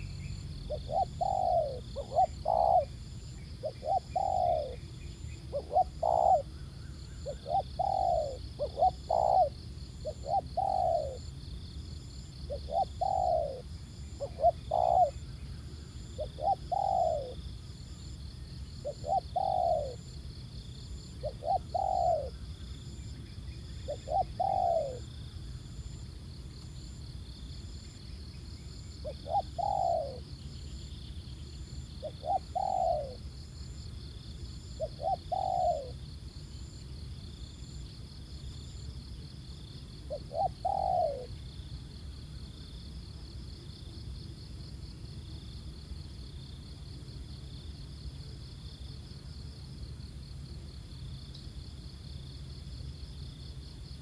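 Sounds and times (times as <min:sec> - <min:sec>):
doves cooing: 0:00.0 - 0:11.4, 0:12.5 - 0:17.4, 0:18.8 - 0:20.1, 0:21.1 - 0:22.5, 0:23.8 - 0:25.1, 0:29.0 - 0:30.3, 0:32.0 - 0:33.3, 0:34.6 - 0:36.0, 0:40.1 - 0:41.4.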